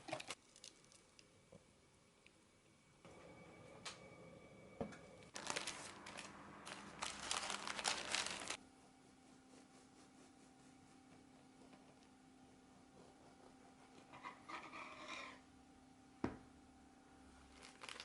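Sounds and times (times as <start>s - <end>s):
crinkling and rustling: 5.3s - 8.6s, 17.5s - 18.0s.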